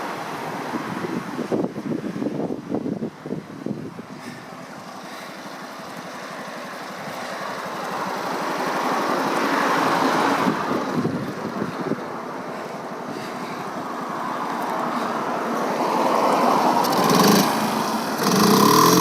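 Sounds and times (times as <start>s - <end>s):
small motorcycle engine running: 16.8s - 19.0s.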